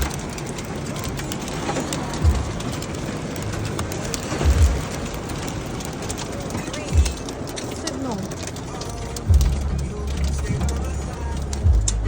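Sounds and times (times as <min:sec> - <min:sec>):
rain and hail hitting surfaces: 0:00.0 - 0:12.0
low thuds: 0:02.2 - 0:02.8, 0:04.4 - 0:05.1, 0:09.3 - 0:12.0.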